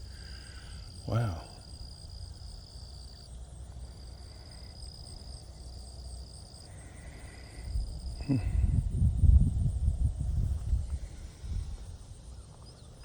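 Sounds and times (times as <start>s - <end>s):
low choppy rumbling: 7.7s - 12.0s.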